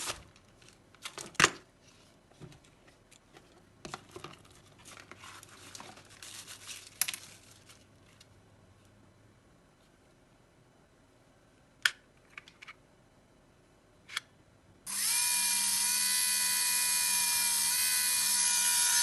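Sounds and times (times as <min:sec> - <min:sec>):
packaging rustling and crinkling: 0:03.9 - 0:08.3.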